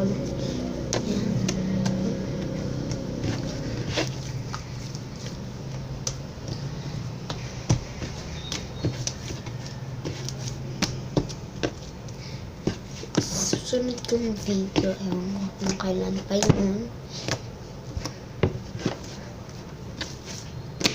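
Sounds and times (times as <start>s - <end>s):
low hum: 0.0s - 8.7s.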